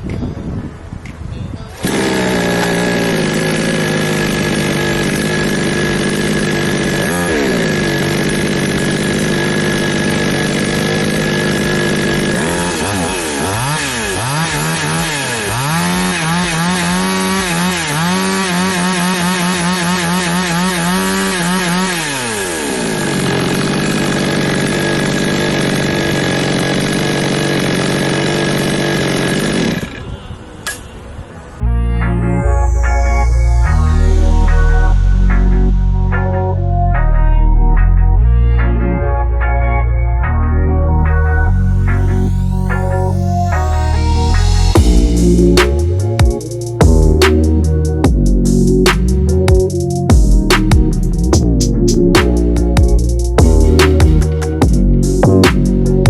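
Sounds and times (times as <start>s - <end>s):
chainsaw engine revving: 1.8s - 30.2s, 41.2s - 56.0s.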